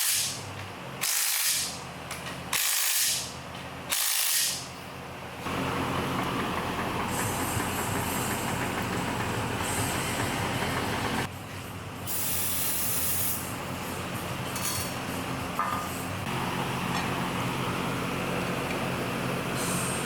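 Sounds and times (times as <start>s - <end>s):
pneumatic tool running: 0.0s - 0.4s, 1.0s - 1.8s, 2.5s - 4.7s
hissing air: 12.1s - 13.5s.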